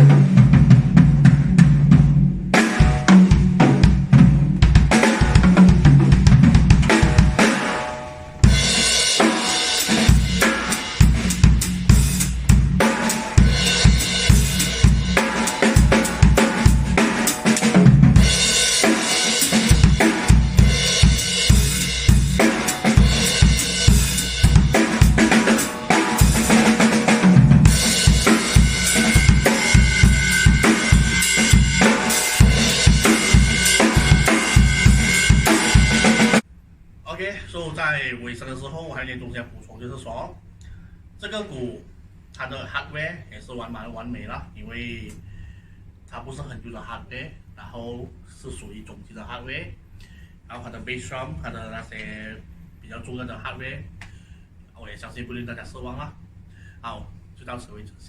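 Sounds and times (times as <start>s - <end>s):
bass drum: 0.0s - 7.6s, 8.4s - 36.4s
cymbals: 2.5s - 36.4s
snare drum: 22.4s - 36.4s.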